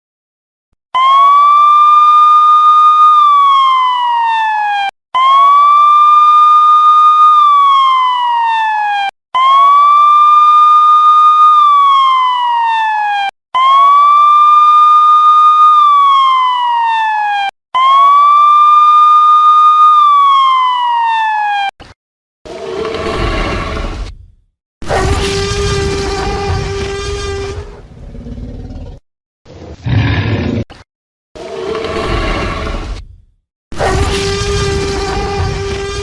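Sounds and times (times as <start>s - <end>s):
siren wailing: 1.0s - 21.7s, 33.8s - 36.0s.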